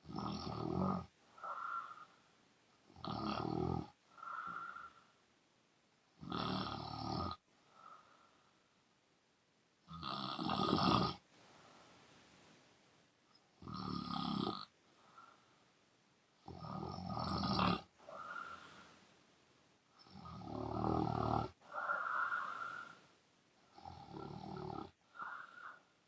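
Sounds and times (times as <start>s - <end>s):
woman snoring loudly: 0.0s - 2.1s, 2.9s - 4.9s, 6.2s - 7.4s, 9.9s - 11.2s, 13.6s - 14.7s, 16.4s - 18.8s, 20.0s - 23.0s, 23.7s - 25.8s
soft breath out: 4.1s - 5.2s, 7.6s - 8.8s, 14.8s - 15.8s, 18.0s - 19.2s, 21.6s - 23.2s, 25.0s - 26.0s.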